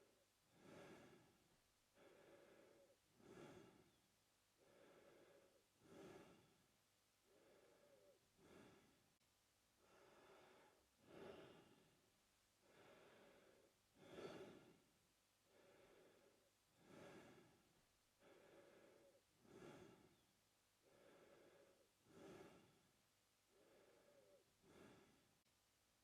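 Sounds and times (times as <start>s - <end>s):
man breathing through mouth: 0.5s - 1.4s, 2.0s - 4.0s, 4.6s - 6.6s, 7.2s - 9.0s, 9.8s - 11.9s, 12.6s - 14.8s, 15.5s - 17.6s, 18.2s - 20.2s, 20.8s - 22.8s, 23.5s - 25.3s.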